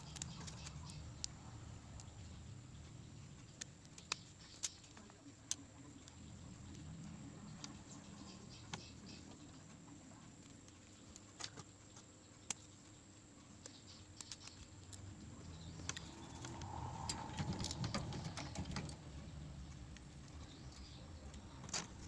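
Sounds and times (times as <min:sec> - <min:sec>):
low rumble: 0:15.0 - 0:21.5.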